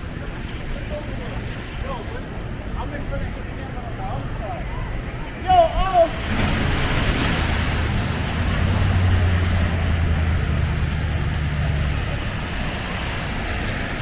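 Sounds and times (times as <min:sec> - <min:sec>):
hiss of traffic: 0:00.0 - 0:14.0
wind: 0:00.0 - 0:14.0
vehicle engine humming: 0:06.1 - 0:14.0.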